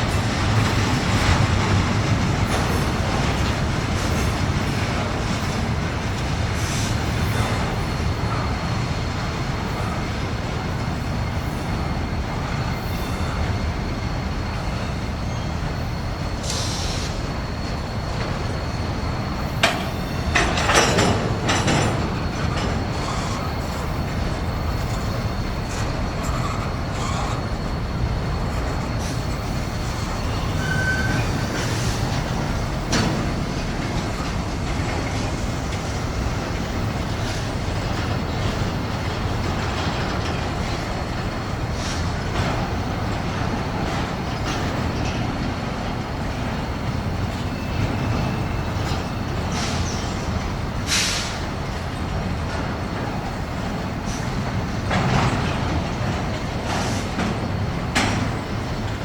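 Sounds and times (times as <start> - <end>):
freight train cars rumbling: 0.0 - 59.0
train cars clanking: 0.0 - 59.0
high squeal: 22.8 - 33.2.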